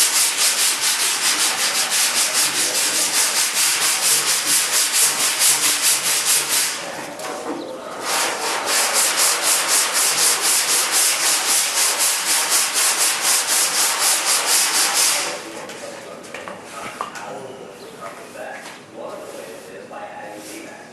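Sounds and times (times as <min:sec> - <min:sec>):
sandpaper rubbing back and forth: 0:00.0 - 0:07.0, 0:07.9 - 0:15.5.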